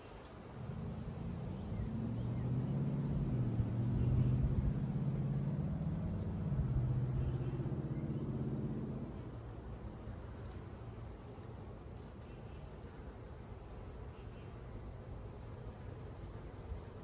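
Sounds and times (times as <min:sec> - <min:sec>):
vehicle engine passing by: 0:00.5 - 0:10.1.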